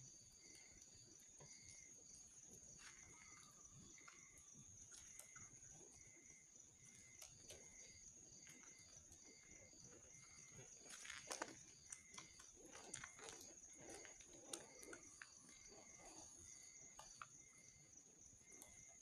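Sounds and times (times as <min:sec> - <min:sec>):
high-pitched insect trill: 0:00.0 - 0:19.0
night insects chirping: 0:00.0 - 0:19.0
campfire crackling and popping: 0:06.8 - 0:17.7.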